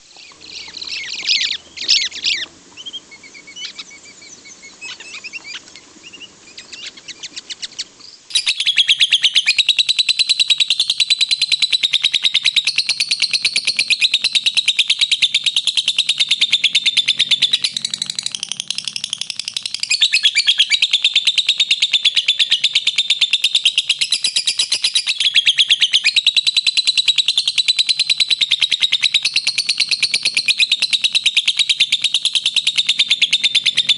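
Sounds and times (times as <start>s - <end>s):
lovebirds chirping: 0.0s - 26.2s.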